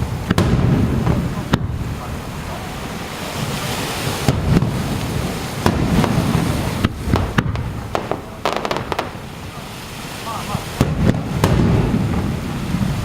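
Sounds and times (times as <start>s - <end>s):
fireworks bangs with rumbling echoes: 0.0s - 13.0s
fireworks crackling: 0.0s - 13.0s.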